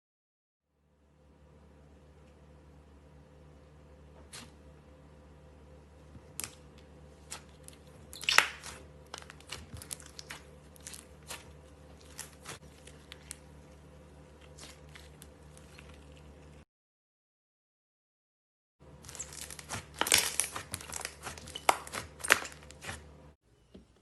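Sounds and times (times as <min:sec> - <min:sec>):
slime crackling crunch: 0:07.2 - 0:16.6, 0:19.0 - 0:23.1
slime clicking and popping: 0:08.2 - 0:11.4.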